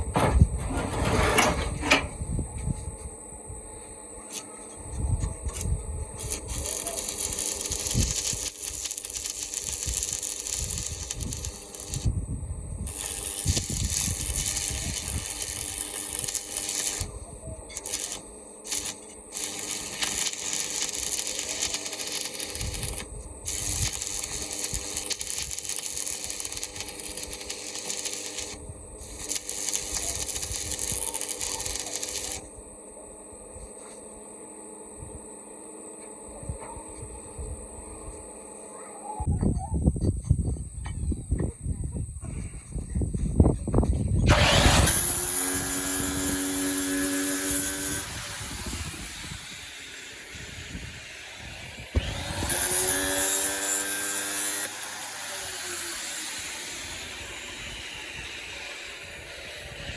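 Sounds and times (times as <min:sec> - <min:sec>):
arc welding crackling hiss: 0:05.5 - 0:32.5, 0:44.3 - 0:59.9.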